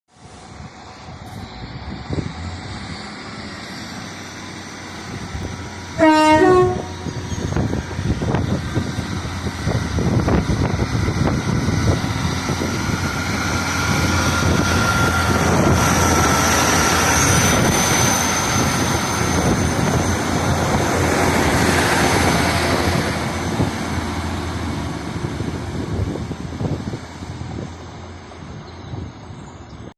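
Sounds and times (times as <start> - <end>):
diesel railcar rumble: 0.1 - 29.9
wind buffeting microphone: 0.2 - 3.5, 4.8 - 29.9
train horn: 6.0 - 7.5.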